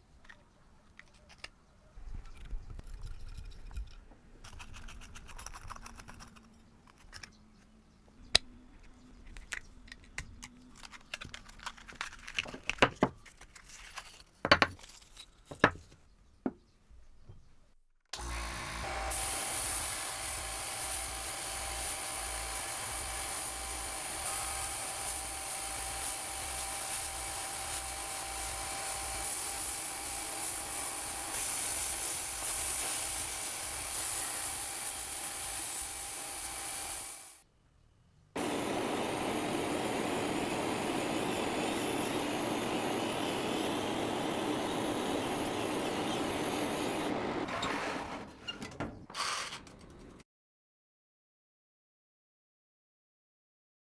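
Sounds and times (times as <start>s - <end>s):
tools and metal clicking: 2.2s - 7.7s
power tool whining: 18.2s - 37.4s, 38.4s - 48.3s.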